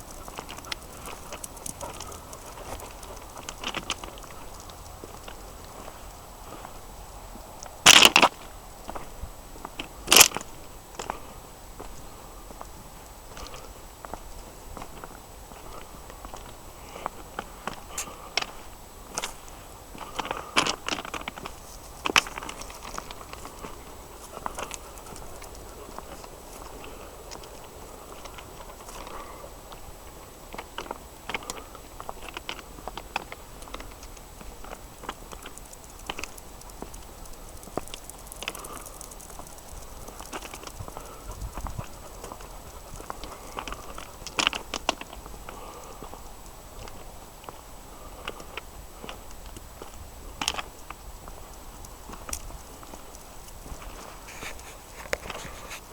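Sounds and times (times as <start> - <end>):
crunching and crackling: 0.0 - 12.0, 13.3 - 55.9
faint clicks: 32.2 - 47.0.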